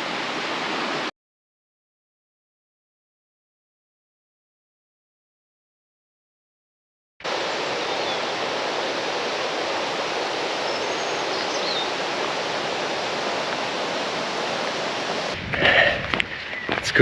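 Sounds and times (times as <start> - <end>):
running water rushing: 0.0 - 1.1, 7.2 - 17.0.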